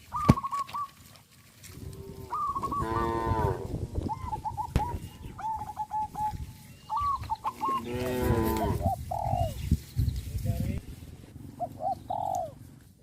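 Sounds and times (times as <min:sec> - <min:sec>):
cows mooing: 0:01.8 - 0:04.0, 0:07.5 - 0:08.9
bird chirping: 0:04.0 - 0:12.6.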